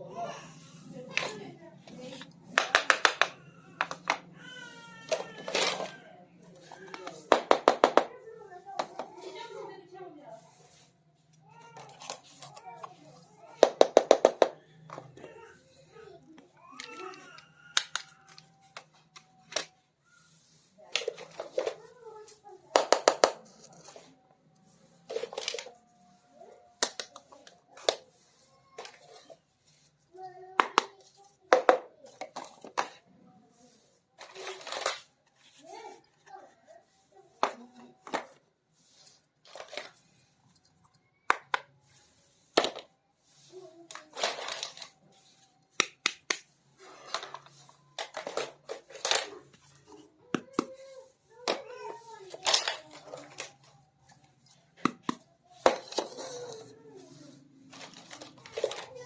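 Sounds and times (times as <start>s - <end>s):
light scraping of plastic toys: 0.0s - 59.0s
plastic toys clicking and tapping: 1.0s - 9.6s, 11.3s - 20.0s, 20.7s - 33.2s, 34.1s - 36.5s, 37.3s - 43.0s, 43.8s - 59.0s
plastic toy pieces clicking: 2.5s - 4.3s, 16.8s - 19.7s.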